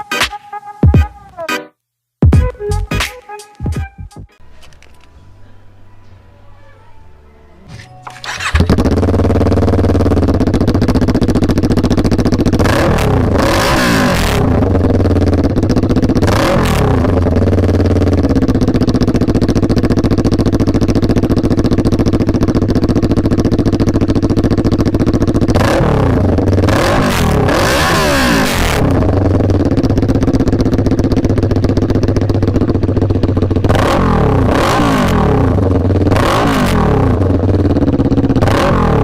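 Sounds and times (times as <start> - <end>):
motorcycle engine revving at idle: 8.1 - 39.0.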